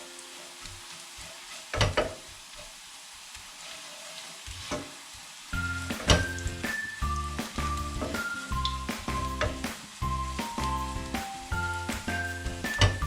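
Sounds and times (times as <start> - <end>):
garlic sizzling in oil: 0.0 - 13.0
background music: 5.6 - 13.0.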